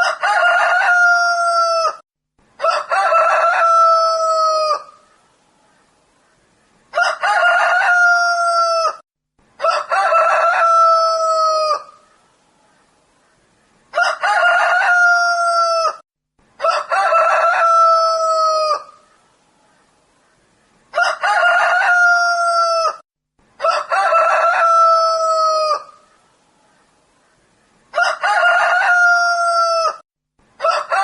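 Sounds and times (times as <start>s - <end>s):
rooster crowing: 0.0s - 2.0s, 2.6s - 5.0s, 6.9s - 9.0s, 9.6s - 12.0s, 13.9s - 16.0s, 16.6s - 19.0s, 20.9s - 23.0s, 23.6s - 26.0s, 27.9s - 30.0s, 30.6s - 31.0s.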